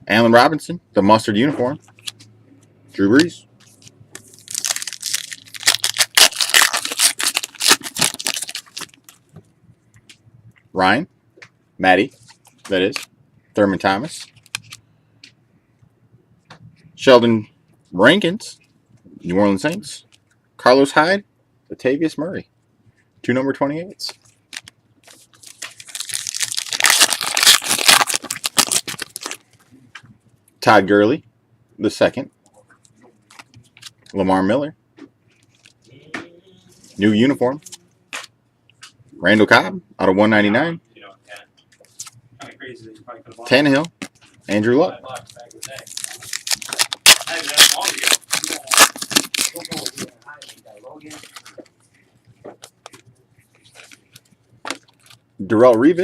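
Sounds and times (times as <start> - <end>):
wrapper crinkling and tearing: 3.6 - 9.2, 24.0 - 29.6, 45.1 - 51.6.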